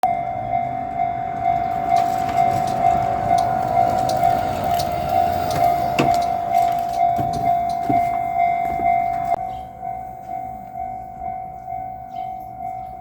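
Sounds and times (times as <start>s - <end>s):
level crossing warning bell: 0.0s - 13.0s.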